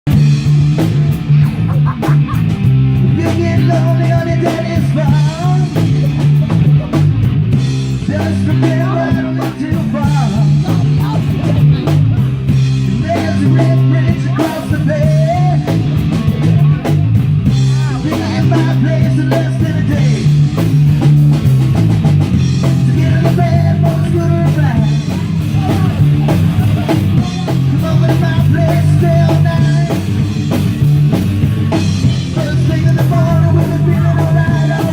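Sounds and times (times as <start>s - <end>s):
drum kit: 0.1s - 34.9s
electric guitar: 0.1s - 34.9s
person singing: 3.1s - 7.1s, 8.0s - 20.4s, 22.6s - 30.2s, 31.5s - 34.9s.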